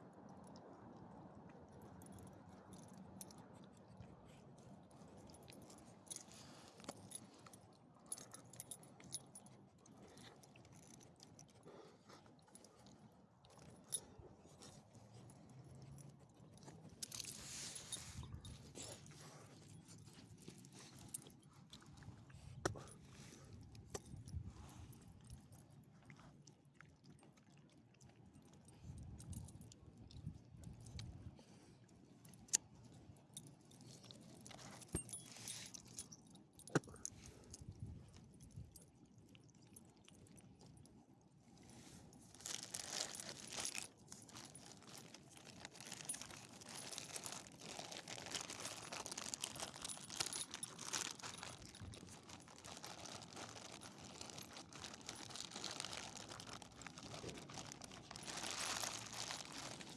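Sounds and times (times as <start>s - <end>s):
rustling crunch: 16.6s - 25.0s, 41.7s - 59.9s
small metal pieces jingling: 42.6s - 52.8s.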